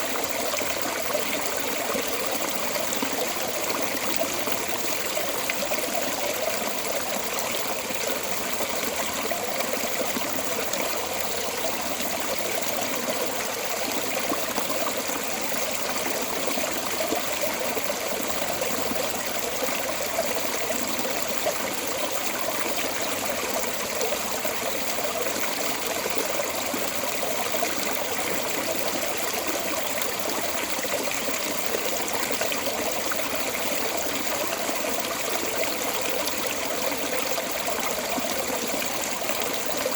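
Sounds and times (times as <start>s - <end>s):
water rushing from storm drain: 0.0s - 39.9s.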